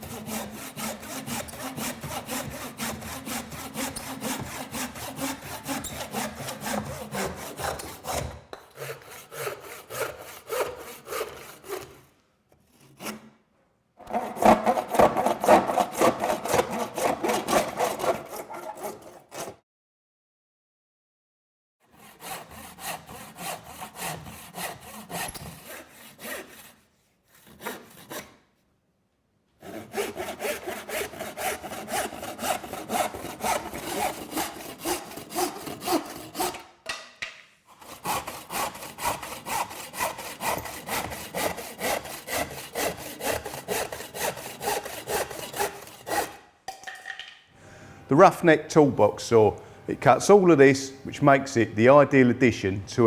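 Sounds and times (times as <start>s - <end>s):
hand saw cutting: 0.0s - 13.4s, 14.0s - 19.6s, 21.8s - 28.4s, 29.6s - 36.9s, 37.7s - 46.5s.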